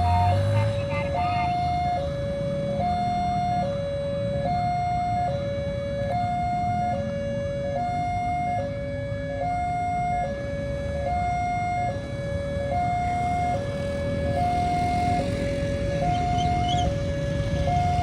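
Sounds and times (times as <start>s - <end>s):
level crossing two-tone alarm: 0.0s - 8.8s, 9.4s - 18.0s.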